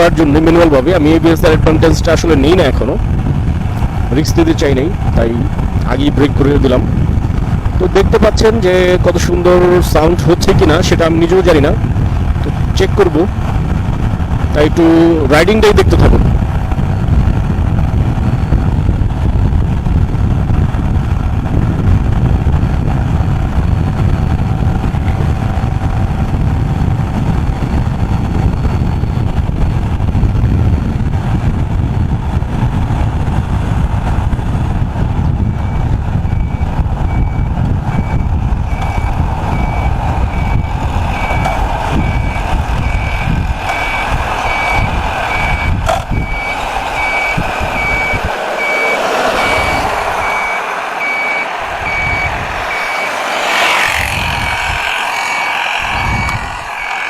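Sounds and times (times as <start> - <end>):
road noise: 0.0 - 57.0
wind buffeting microphone: 0.0 - 57.0
motorcycle engine: 33.5 - 57.0
high electronic beep: 35.6 - 41.4, 42.0 - 53.1, 53.9 - 57.0.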